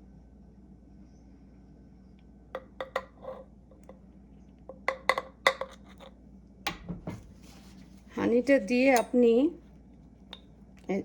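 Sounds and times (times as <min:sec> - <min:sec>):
glass and utensils clinking: 0:02.6 - 0:03.4.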